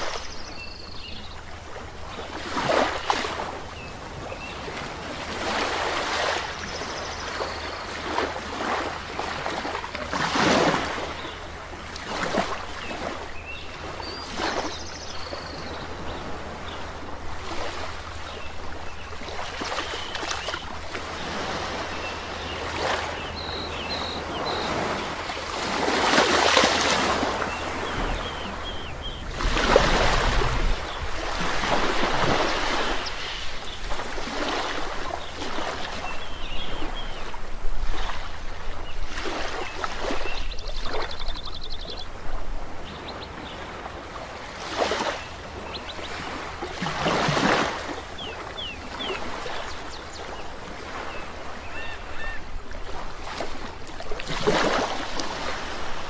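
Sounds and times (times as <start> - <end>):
small birds chirping: 0.0 - 1.5, 18.2 - 25.1, 27.4 - 29.4, 38.8 - 42.2, 45.0 - 47.3, 47.9 - 52.5
sea waves breaking on shore: 0.0 - 56.0.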